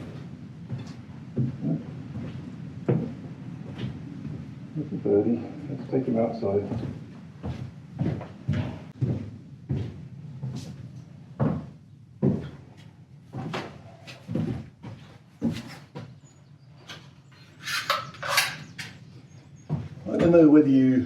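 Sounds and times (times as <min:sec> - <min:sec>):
scraping or rustling: 0:16.9 - 0:19.0
hard objects knocking and clattering: 0:17.5 - 0:19.1.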